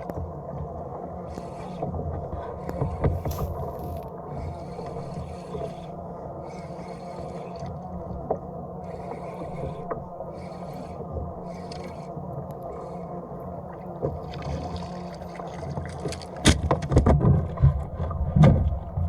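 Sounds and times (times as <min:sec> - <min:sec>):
scraping against hull: 0:00.6 - 0:19.0
water washing against kayak: 0:01.2 - 0:05.9, 0:12.7 - 0:19.0.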